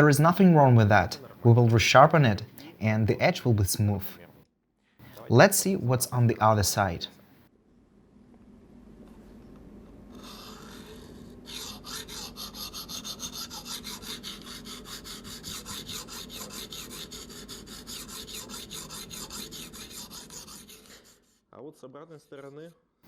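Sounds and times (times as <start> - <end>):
sharpening bar rasping on knife: 11.5 - 21.2.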